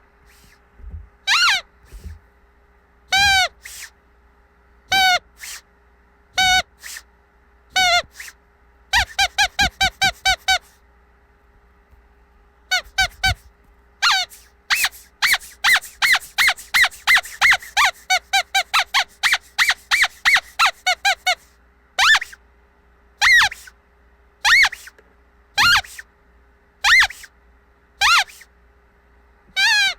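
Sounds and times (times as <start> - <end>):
squeaky dog toy squeaking: 1.2 - 2.2, 3.1 - 3.9, 4.9 - 5.6, 6.4 - 7.0, 7.7 - 10.7, 12.7 - 13.4, 14.0 - 22.4, 23.2 - 23.7, 24.4 - 25.0, 25.6 - 26.1, 26.8 - 27.3, 28.0 - 28.5, 29.5 - 29.9.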